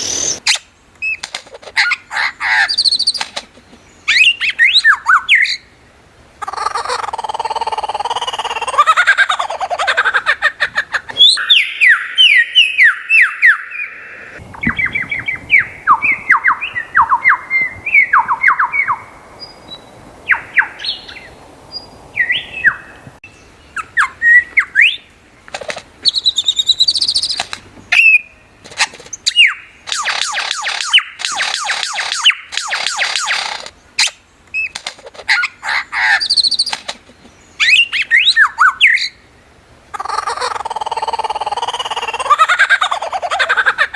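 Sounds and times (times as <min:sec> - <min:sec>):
bird clicks and chirps: 0:02.9 - 0:03.6, 0:26.9 - 0:35.4, 0:36.3 - 0:37.1
bird singing falling whistles: 0:11.2 - 0:22.9.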